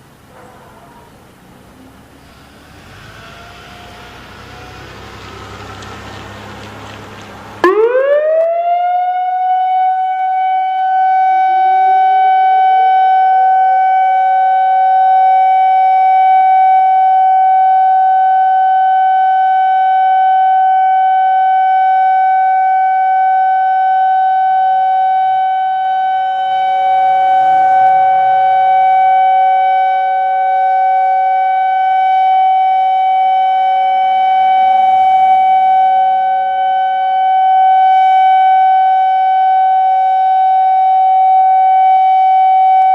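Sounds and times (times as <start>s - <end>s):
lower siren tone: 0.0s - 42.9s
warning siren steady tone: 0.0s - 42.9s.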